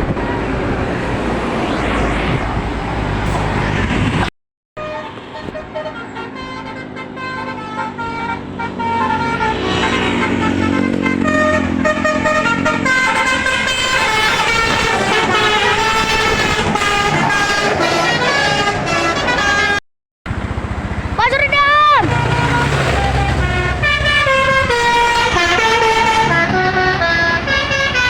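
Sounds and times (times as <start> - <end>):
bus engine revving: 0.0 - 4.3, 4.9 - 28.0
multi-tone bus air horn: 4.8 - 19.8, 21.8 - 28.0.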